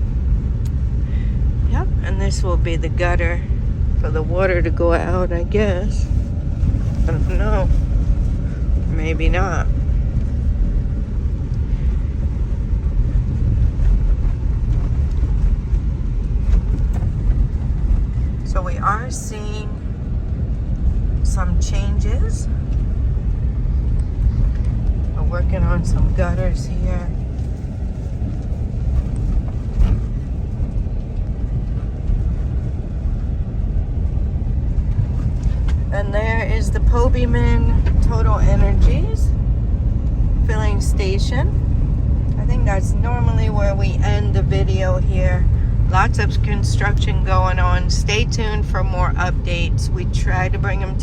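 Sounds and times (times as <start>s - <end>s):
car interior road rumble: 0.0s - 51.0s.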